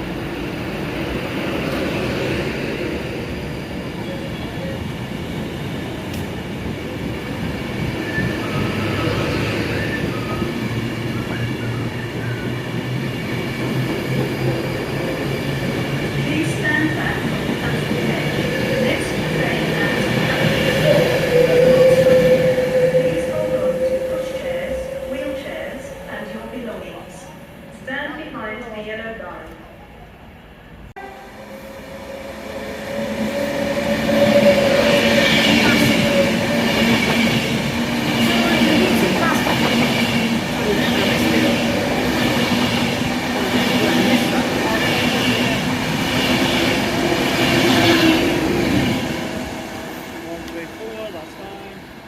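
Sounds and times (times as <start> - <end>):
passenger train rumbling past: 0.0 - 52.0
train wheels squealing on rails: 7.9 - 12.5, 20.7 - 25.5.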